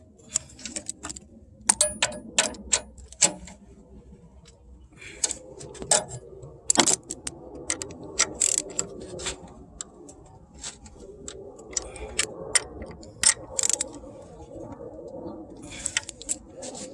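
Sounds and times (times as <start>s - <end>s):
hand tools clicking and clinking: 0.3s - 3.5s, 11.7s - 14.0s, 15.8s - 16.4s.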